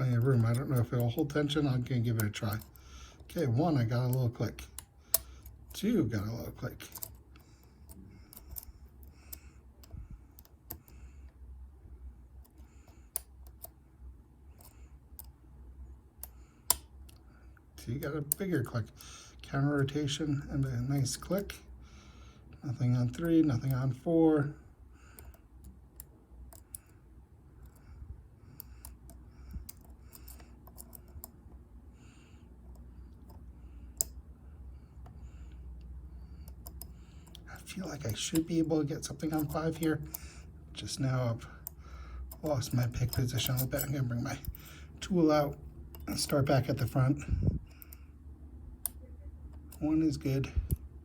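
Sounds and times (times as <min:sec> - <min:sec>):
lock pick metallic clicks: 0:00.1 - 0:11.0, 0:12.4 - 0:13.8, 0:16.2 - 0:17.2, 0:25.0 - 0:27.0, 0:28.5 - 0:31.6, 0:32.6 - 0:34.2, 0:35.0 - 0:41.0, 0:41.6 - 0:47.1.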